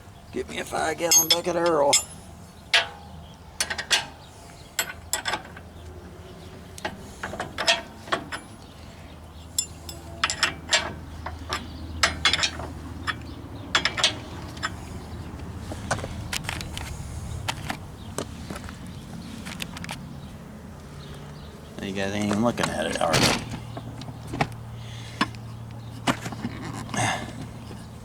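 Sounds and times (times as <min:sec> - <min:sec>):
metal tools clinking: 0:01.0 - 0:03.0, 0:09.6 - 0:14.8, 0:22.4 - 0:23.8.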